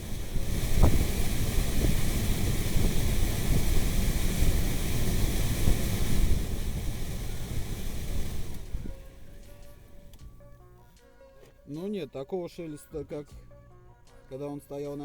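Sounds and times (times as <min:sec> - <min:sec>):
blower fan rushing air: 0:00.0 - 0:10.6.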